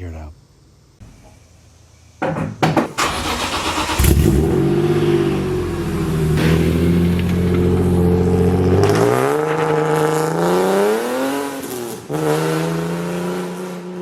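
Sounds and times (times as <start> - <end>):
car engine revving: 3.0 - 14.0.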